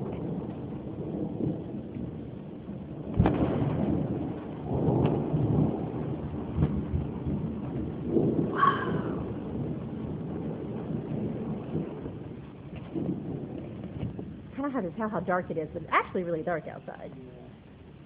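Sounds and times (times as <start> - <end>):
sharp thunderclap: 0.0 - 14.7
rolling thunder rumbles: 0.0 - 18.0
steady rain: 0.0 - 18.0.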